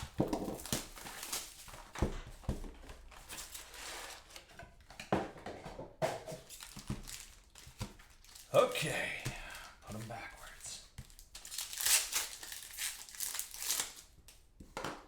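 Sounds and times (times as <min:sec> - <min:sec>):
plastic and cardboard crinkling: 0:00.0 - 0:15.0.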